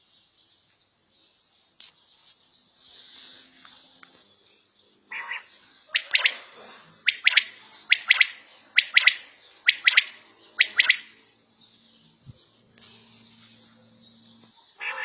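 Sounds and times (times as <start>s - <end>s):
quail calling: 5.1s - 11.2s, 14.8s - 15.0s.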